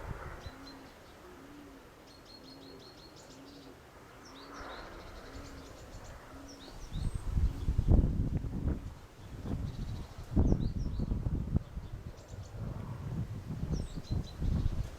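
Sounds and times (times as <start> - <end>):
wind gust on microphone: 0.0 - 1.1, 4.6 - 14.9
wind: 0.0 - 14.9
small birds chirping: 0.2 - 8.0, 9.0 - 13.0, 13.6 - 14.9.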